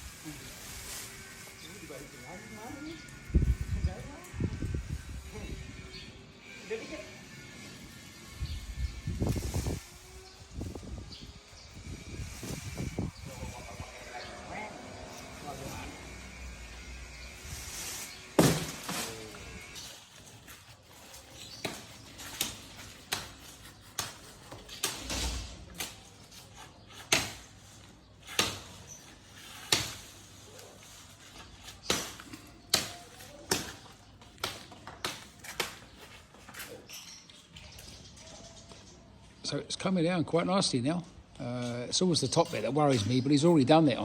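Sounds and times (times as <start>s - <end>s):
blade chopping into wood: 18.4s - 19.1s, 27.0s - 27.5s, 28.3s - 28.8s, 29.7s - 30.1s, 31.8s - 35.8s.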